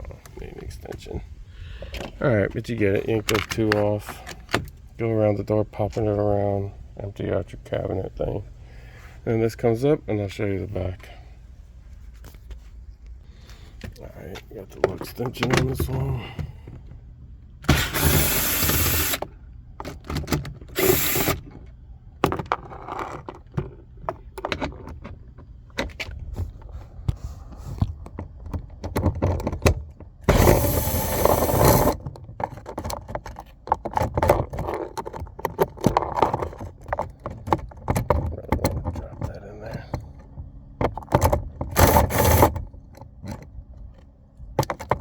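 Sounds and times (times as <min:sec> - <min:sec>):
power drill spinning out bolts: 0:17.6 - 0:19.3, 0:20.7 - 0:21.6, 0:30.2 - 0:32.0, 0:41.7 - 0:42.6
tools clicking and knocking: 0:17.6 - 0:26.2.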